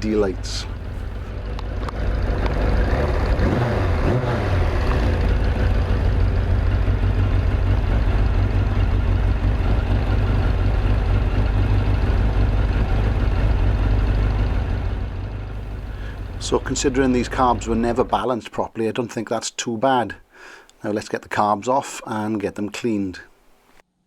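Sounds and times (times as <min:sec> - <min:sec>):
motorcycle engine idling: 0:00.0 - 0:03.3, 0:04.7 - 0:13.7, 0:15.6 - 0:18.2.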